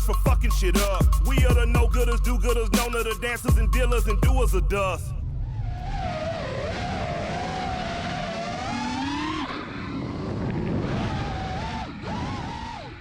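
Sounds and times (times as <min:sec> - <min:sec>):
quadcopter motors whining: 0:06.0 - 0:13.0.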